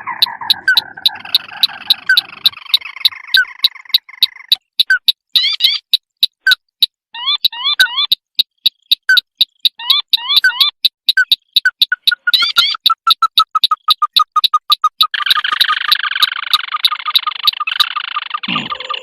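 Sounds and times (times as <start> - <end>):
chorus of overlapping bird calls: 0.0 - 4.8, 15.0 - 19.0
sharp evenly spaced clicks: 0.0 - 19.0.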